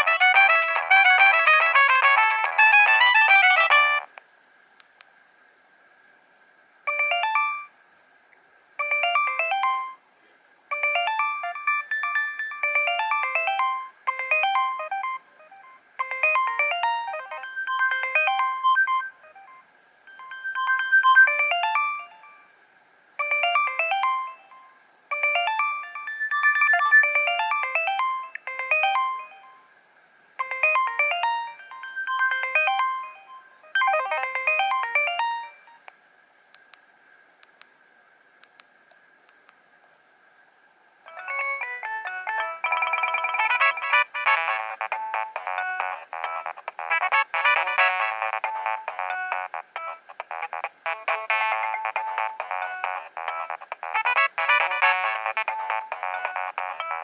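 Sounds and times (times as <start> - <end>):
phone ringtone synthesised melody: 0.0 - 4.1, 6.9 - 7.7, 8.8 - 10.0, 10.7 - 22.5, 23.2 - 29.6, 30.4 - 35.8, 41.1 - 57.0
faint high whine: 0.0 - 46.8.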